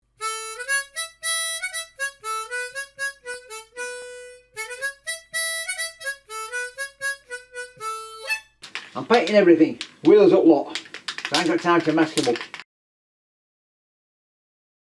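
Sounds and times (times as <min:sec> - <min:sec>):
harmonica melody: 0:00.0 - 0:08.6.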